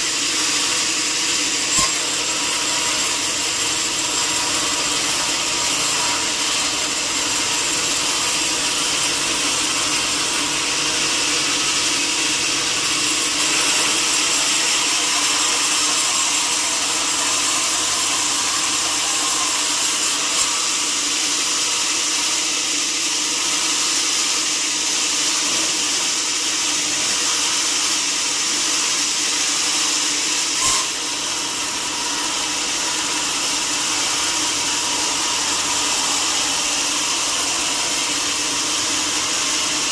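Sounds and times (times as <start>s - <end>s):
saw cutting wood: 0.0s - 39.9s.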